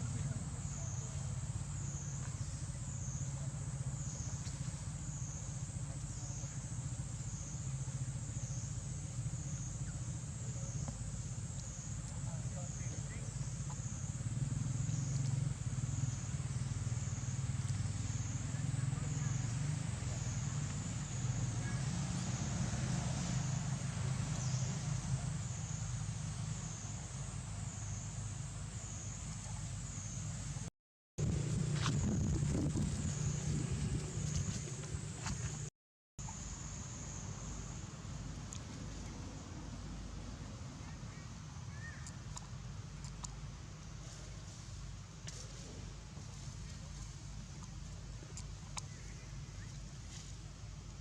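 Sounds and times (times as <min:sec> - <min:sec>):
low steady rumble: 0:00.0 - 0:35.7, 0:36.3 - 0:51.0
cicadas pulsing: 0:00.0 - 0:51.0
low rumble: 0:31.2 - 0:35.7.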